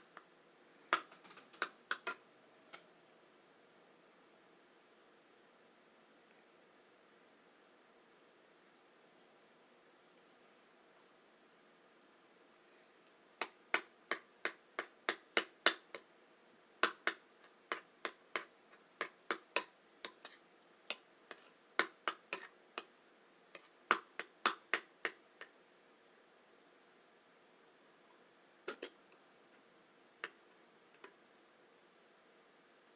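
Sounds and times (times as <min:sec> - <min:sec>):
bowl tapping clicks: 0:01.0 - 0:02.2.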